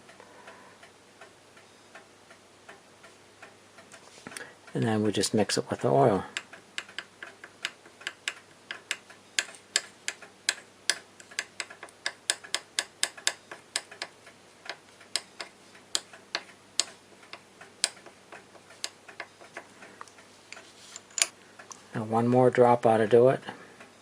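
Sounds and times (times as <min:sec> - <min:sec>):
small tool tapping hard surface: 0:06.4 - 0:19.7.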